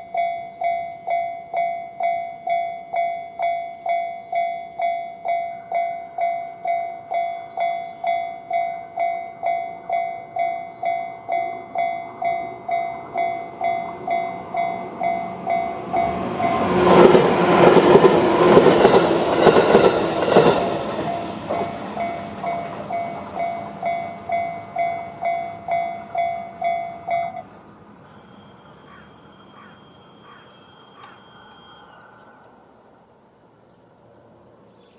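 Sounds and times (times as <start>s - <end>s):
level crossing bell dinging: 0.0s - 16.7s, 22.0s - 27.5s
electric train passing: 0.0s - 34.8s
wheel clatter over rail joints: 13.1s - 24.4s.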